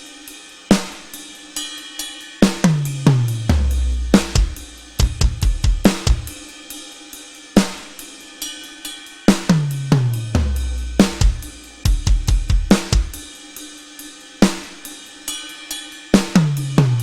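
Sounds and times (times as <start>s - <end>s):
drum kit playing: 0.7s - 6.8s, 7.6s - 8.6s, 9.3s - 17.0s.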